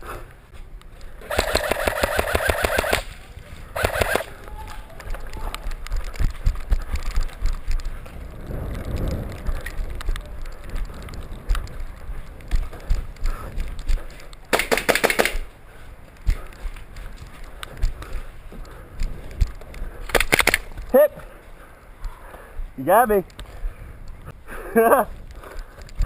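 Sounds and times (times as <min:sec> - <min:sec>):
scattered clicks: 0:00.8 - 0:03.2, 0:03.8 - 0:15.5, 0:16.2 - 0:20.9
camera jostling rumble: 0:00.9 - 0:20.9
airsoft gunfire burst: 0:01.2 - 0:03.1, 0:03.8 - 0:04.3, 0:14.5 - 0:15.5.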